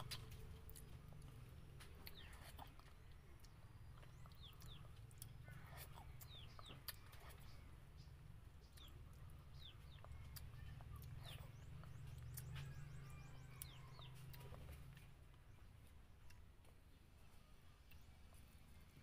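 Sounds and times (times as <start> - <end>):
faint high bird chirps: 2.0 - 15.8.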